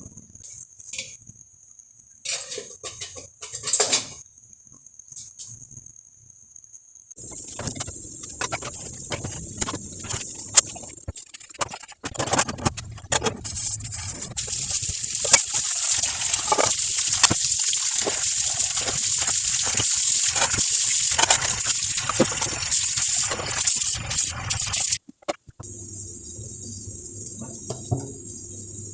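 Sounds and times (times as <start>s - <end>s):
water running: 13.4s - 28.9s.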